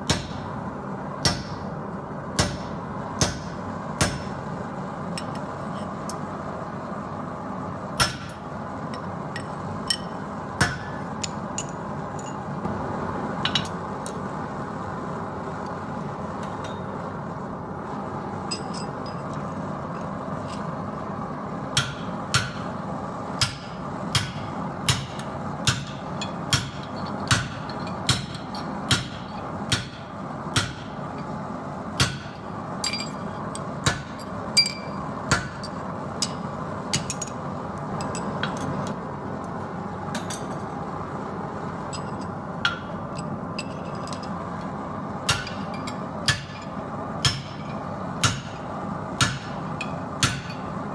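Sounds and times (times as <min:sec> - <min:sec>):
hammer striking hot steel: 0:00.0 - 0:00.5, 0:01.2 - 0:01.7, 0:02.4 - 0:04.6, 0:08.0 - 0:12.4, 0:21.7 - 0:22.7, 0:23.4 - 0:31.0, 0:32.0 - 0:37.4, 0:41.9 - 0:44.0, 0:45.2 - 0:50.8.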